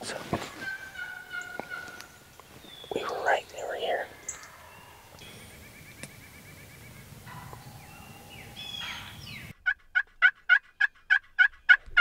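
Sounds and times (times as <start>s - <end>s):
soft turkey calls: 0.0s - 5.2s
turkey yelps: 0.6s - 2.1s, 7.3s - 12.0s
turkey gobble: 0.6s - 2.2s, 8.6s - 12.0s.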